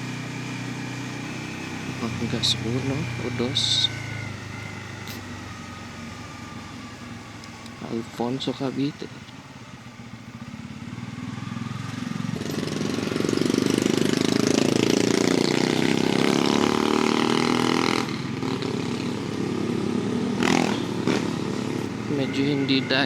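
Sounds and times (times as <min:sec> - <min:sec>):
motorcycle engine under throttle: 0:00.0 - 0:23.0.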